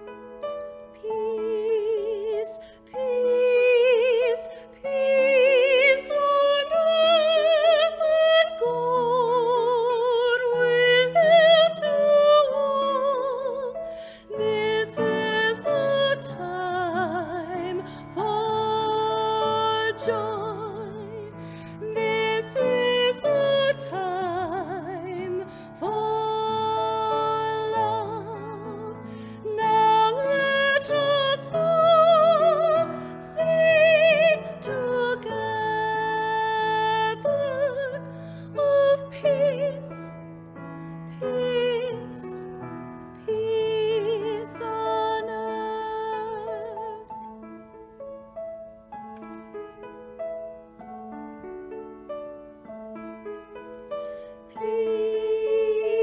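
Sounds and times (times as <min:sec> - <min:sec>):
piano accompaniment: 0:00.0 - 0:56.0
voices singing in harmony: 0:14.3 - 0:35.8, 0:54.5 - 0:56.0.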